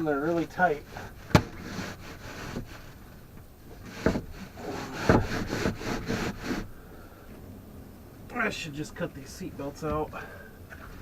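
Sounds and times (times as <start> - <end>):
wood scraping against wood: 0.0 - 6.8
heavy knocks on wood: 5.0 - 5.8.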